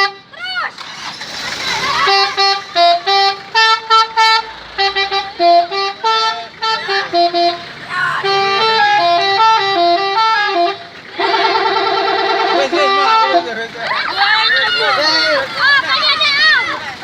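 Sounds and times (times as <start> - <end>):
multi-tone horn playing a tune: 0.0 - 0.3, 2.0 - 13.6.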